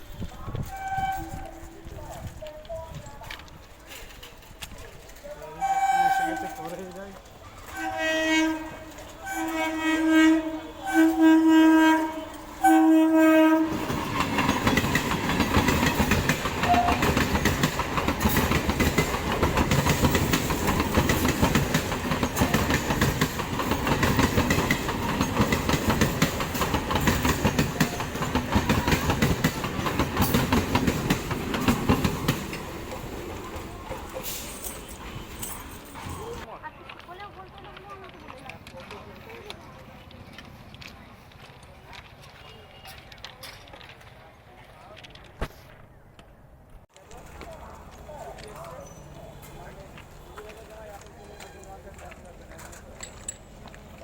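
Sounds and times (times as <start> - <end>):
train passing with loud rush: 0.0 - 36.5
train horn blasts: 0.6 - 1.8, 5.6 - 6.7, 7.7 - 14.0, 16.6 - 17.2
train wheels clickety-clack: 13.5 - 44.2, 47.2 - 54.0.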